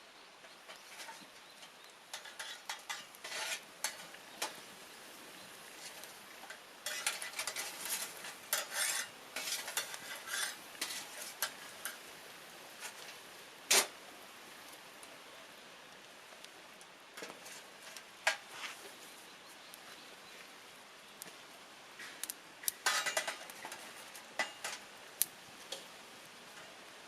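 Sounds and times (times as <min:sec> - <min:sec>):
wood fire crackling: 0:00.0 - 0:27.0
loud pop from fire: 0:13.7 - 0:14.0.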